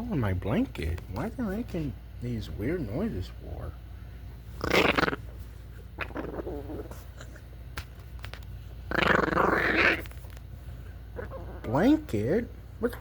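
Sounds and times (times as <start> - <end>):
dog growling: 4.6 - 7.5, 8.9 - 10.2, 11.2 - 12.0.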